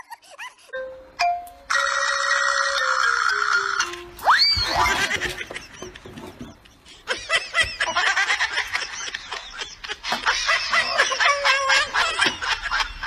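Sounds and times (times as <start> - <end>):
high-pitched giggling: 0.0 - 0.8, 4.7 - 13.0.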